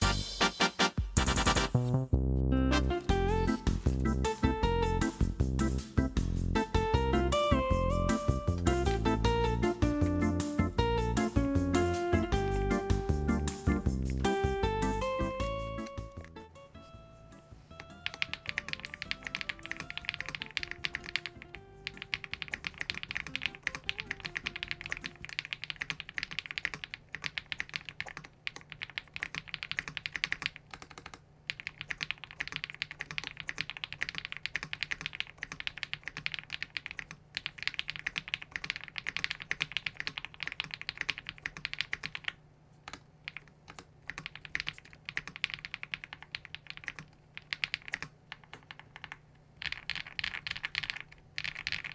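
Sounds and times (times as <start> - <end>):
fast mechanical keyboard typing: 17.8 - 51.9.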